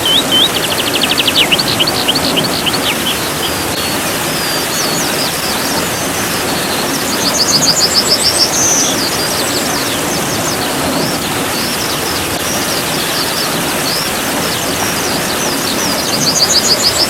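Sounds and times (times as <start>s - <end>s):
fast bird trill: 0.0s - 4.0s
small birds chirping: 0.0s - 5.5s
steady rain: 0.0s - 5.6s.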